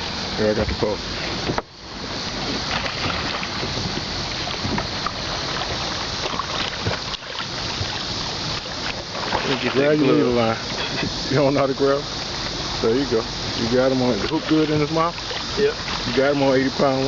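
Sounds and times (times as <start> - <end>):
wind noise on microphone: 0.0 - 9.7
river water around boat: 0.0 - 17.0.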